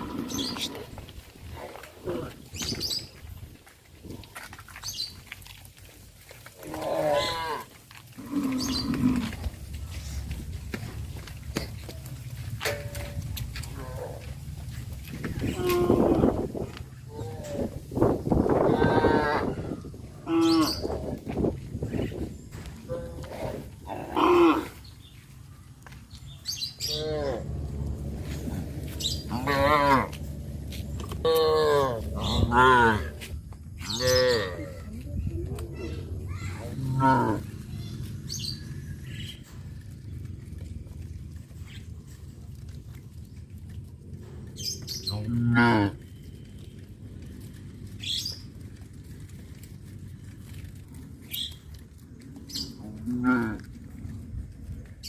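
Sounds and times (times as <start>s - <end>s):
birds chirping: 0.0s - 55.0s
outdoor background noise: 0.0s - 55.0s
low rumble: 7.9s - 55.0s
cow mooing: 18.6s - 20.8s, 26.9s - 30.4s, 31.2s - 33.2s, 36.8s - 37.5s, 45.2s - 46.0s
cattle calling: 26.8s - 34.9s.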